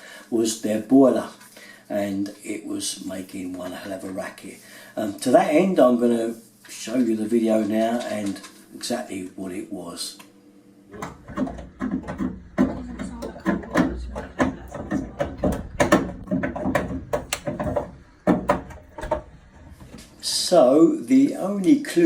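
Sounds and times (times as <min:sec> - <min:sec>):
boiler knocking and banging: 0:10.9 - 0:20.2.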